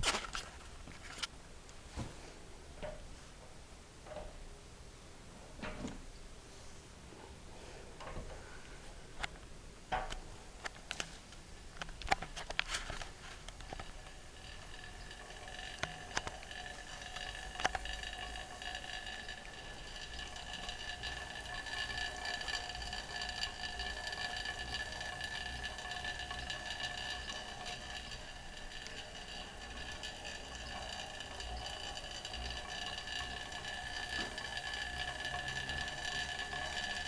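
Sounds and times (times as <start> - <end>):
sharp clicks and knocks: 2.8 - 3.1, 9.2 - 11.2, 11.8 - 37.0
exercise bike chain and flywheel whir: 13.0 - 37.0.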